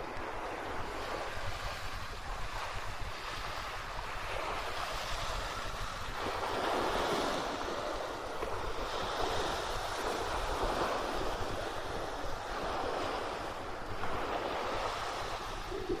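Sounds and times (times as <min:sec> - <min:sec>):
surf washing onto beach: 0:00.0 - 0:16.0
wind rumbling on microphone: 0:00.0 - 0:16.0.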